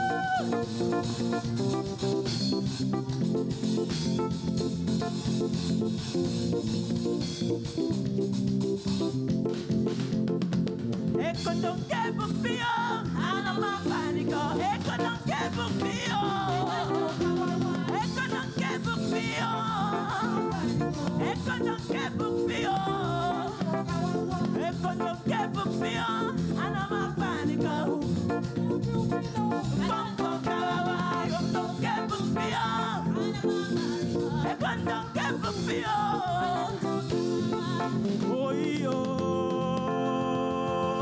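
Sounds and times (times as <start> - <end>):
voices singing: 0.0 - 2.2, 11.5 - 41.0
band playing upbeat music: 0.0 - 41.0.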